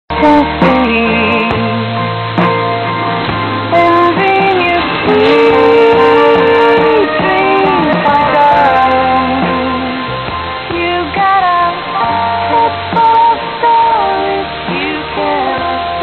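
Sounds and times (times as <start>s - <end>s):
guitar music over radio: 0.1s - 16.0s.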